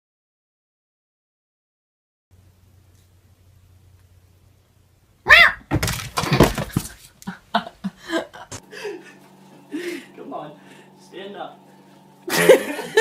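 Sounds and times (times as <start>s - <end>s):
short high cry: 5.3s - 5.6s.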